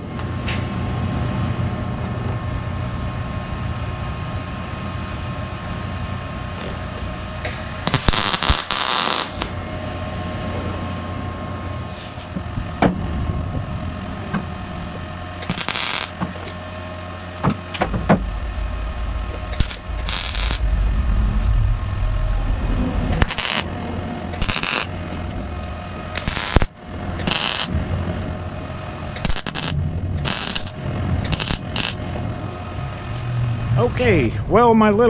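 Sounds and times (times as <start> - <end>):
steady low hum: 0.0 - 35.0
welding arc bursts: 7.4 - 9.5, 15.4 - 16.4, 19.5 - 20.6, 23.2 - 23.7, 24.4 - 25.0, 26.1 - 27.7, 29.2 - 32.0.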